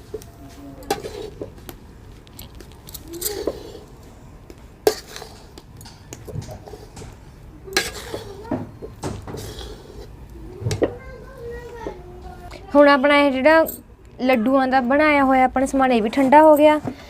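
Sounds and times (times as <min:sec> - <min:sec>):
spoon knocking and scraping bowl: 0:00.8 - 0:01.5, 0:04.9 - 0:10.1.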